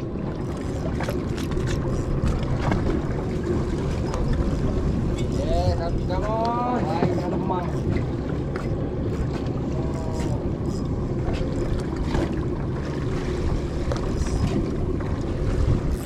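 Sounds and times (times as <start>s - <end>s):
boat engine low rumble: 0.0s - 16.0s
wind buffeting microphone: 1.8s - 8.3s, 13.4s - 16.0s.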